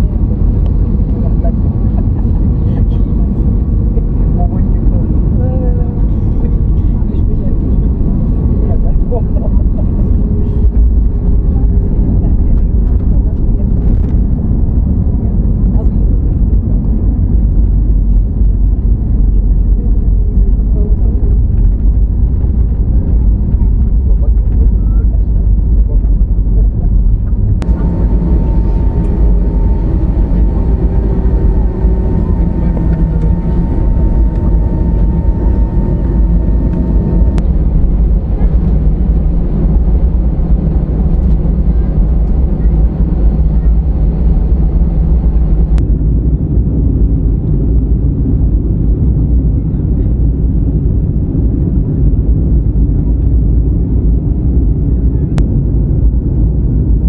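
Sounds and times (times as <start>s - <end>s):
jet engine rumble: 0.0s - 57.0s
faint whining tones: 27.5s - 45.8s.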